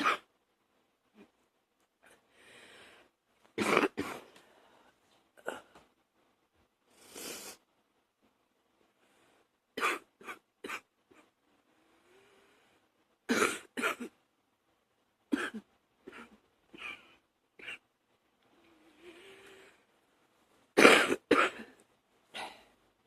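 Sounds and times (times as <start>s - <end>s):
woman coughing: 15.3s - 17.0s, 20.8s - 21.7s.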